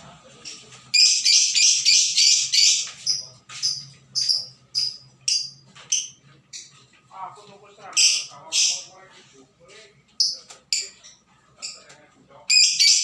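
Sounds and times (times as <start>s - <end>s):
lovebird chirping: 1.0s - 6.7s, 12.5s - 13.0s.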